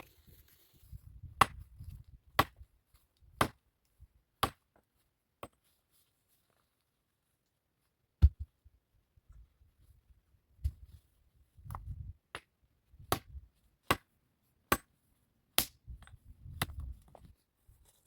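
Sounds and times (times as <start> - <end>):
axe chopping wood: 1.4 - 1.7, 2.3 - 2.7, 3.4 - 3.6, 4.4 - 4.8, 12.3 - 14.9, 15.6 - 15.8.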